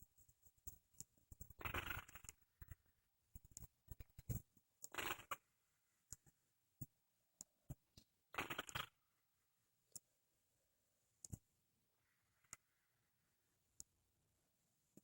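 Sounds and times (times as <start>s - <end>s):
faint small clicks: 11.2s - 11.5s.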